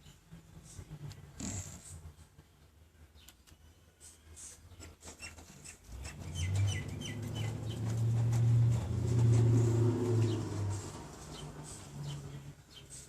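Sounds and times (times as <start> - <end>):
low buzzing snore: 1.4 - 2.0
high squeaky chirps: 5.0 - 7.8.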